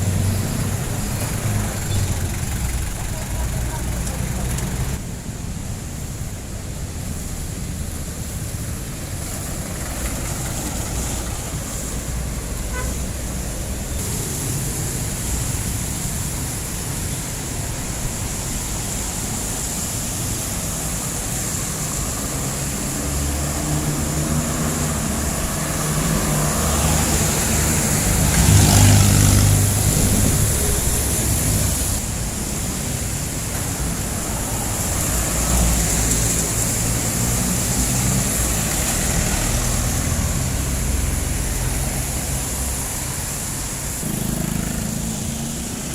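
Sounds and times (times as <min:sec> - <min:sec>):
diesel engines in street traffic: 0:00.0 - 0:45.9.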